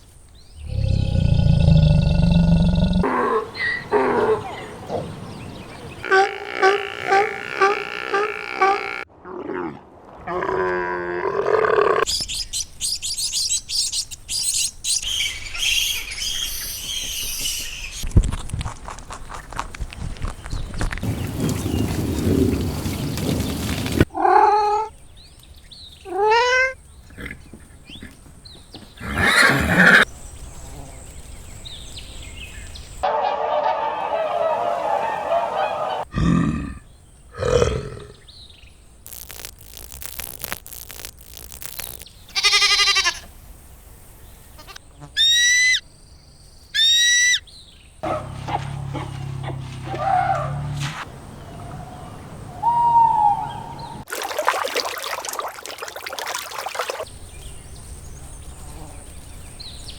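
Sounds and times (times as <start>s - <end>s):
varied animal calls: 0.6s - 9.6s, 39.1s - 43.3s.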